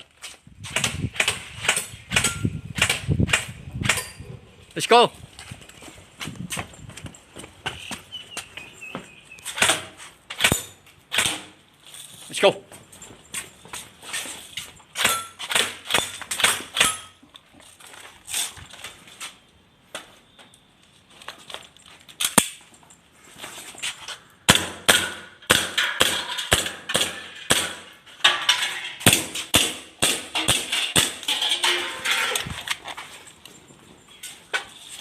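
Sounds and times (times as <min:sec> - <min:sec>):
airsoft guns firing: 0:24.5 - 0:27.9.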